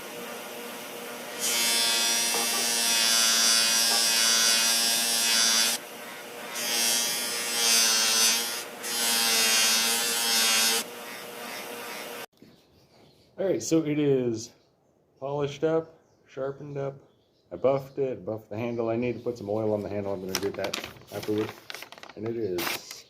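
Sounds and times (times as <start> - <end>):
power tool motor humming: 0.0 - 12.3
knife blade grinding: 1.6 - 4.4.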